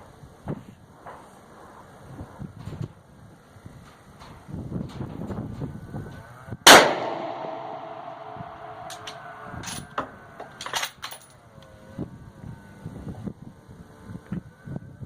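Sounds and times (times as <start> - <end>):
rifle shot with echo: 6.7 - 9.5
rifle bolt metallic clicks: 8.8 - 11.0.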